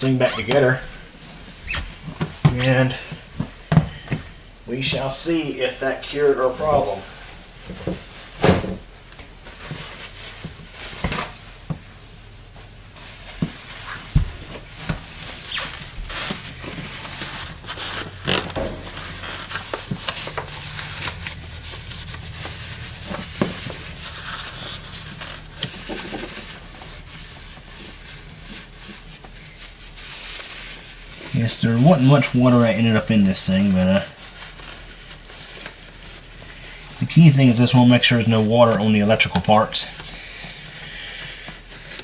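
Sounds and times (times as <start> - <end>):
hands rubbing in dishwasher: 12.9 - 42.0.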